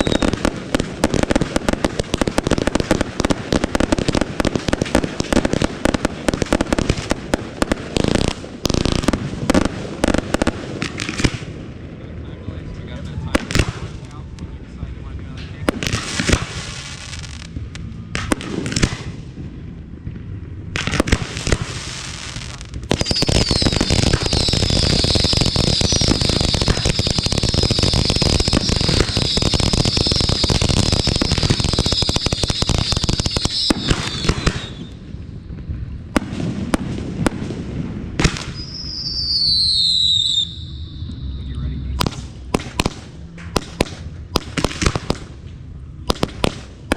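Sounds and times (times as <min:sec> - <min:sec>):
fireworks whistling: 0:00.0 - 0:11.5, 0:20.8 - 0:35.2, 0:38.2 - 0:45.3
crackling bursts: 0:00.0 - 0:46.9
fireworks bangs: 0:00.0 - 0:46.9.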